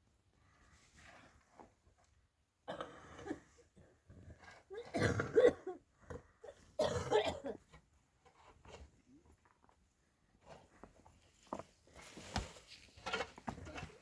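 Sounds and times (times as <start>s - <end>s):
person coughing: 4.8s - 5.8s, 6.8s - 7.6s.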